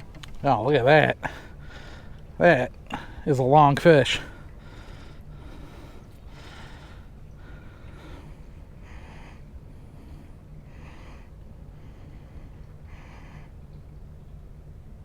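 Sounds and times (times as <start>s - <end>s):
steady low hum: 0.0s - 15.0s
man breathing hard: 1.2s - 2.3s, 4.3s - 13.6s.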